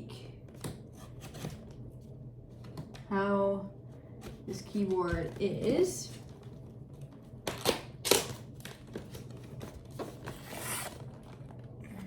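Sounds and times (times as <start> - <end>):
papery scrape: 10.3 - 11.0.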